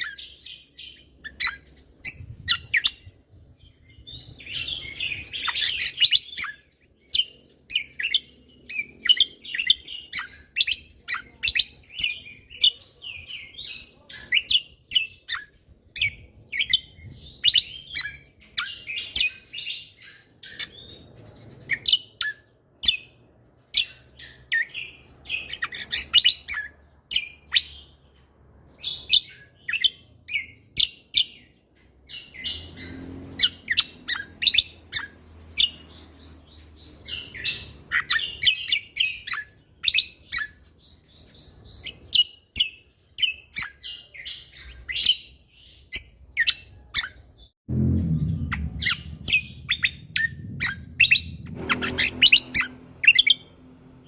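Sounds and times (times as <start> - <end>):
songbird chirping and trilling: 0.0 - 54.0
low rumble: 47.6 - 54.0.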